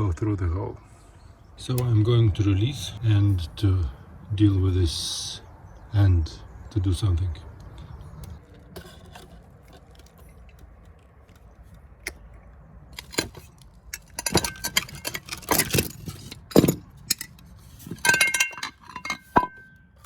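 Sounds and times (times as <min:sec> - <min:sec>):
metallic clinks and rattles: 0:08.4 - 0:11.8, 0:13.0 - 0:19.8.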